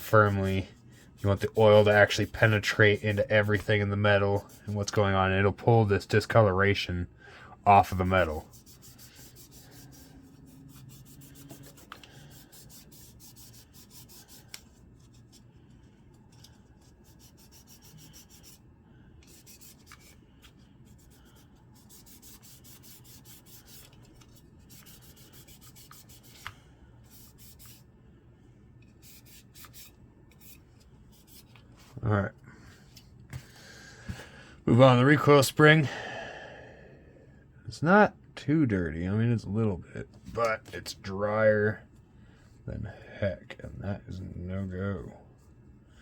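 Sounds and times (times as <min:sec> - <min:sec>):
pad rubbing on steel: 0:00.0 - 0:03.8, 0:07.8 - 0:15.6, 0:16.3 - 0:18.6, 0:19.2 - 0:27.9, 0:28.9 - 0:31.8.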